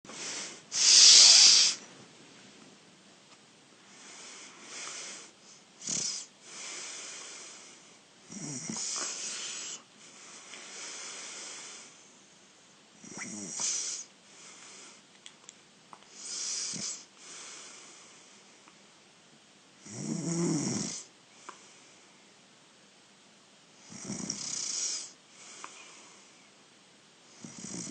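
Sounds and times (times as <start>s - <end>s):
man snoring: 0.2s - 1.8s, 4.1s - 7.6s, 8.3s - 9.8s, 13.0s - 14.1s, 16.2s - 17.1s, 19.8s - 21.1s, 23.9s - 25.2s, 27.4s - 27.9s.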